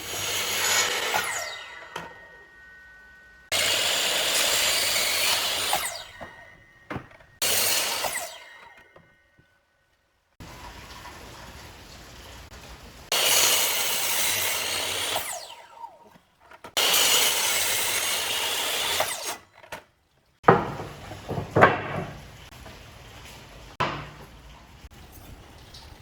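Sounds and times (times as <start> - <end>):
power tool cutting wood: 0.0 - 10.0, 13.1 - 19.8
sharp wood knocks: 20.4 - 22.2, 23.8 - 24.2.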